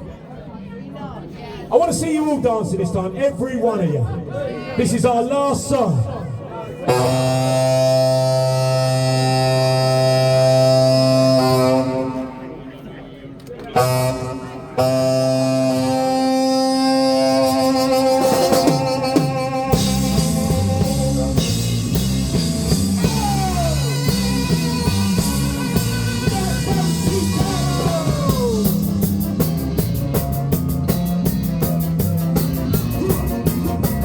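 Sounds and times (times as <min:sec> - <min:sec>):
live ska band playing: 0:06.8 - 0:12.6, 0:13.7 - 0:34.0
bass and drums beat: 0:06.9 - 0:11.4, 0:17.1 - 0:34.0
sliding notes: 0:13.8 - 0:34.0.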